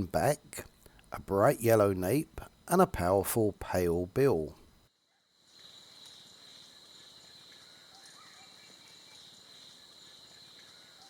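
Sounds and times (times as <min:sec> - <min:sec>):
faint bird chirps: 0:05.0 - 0:11.0.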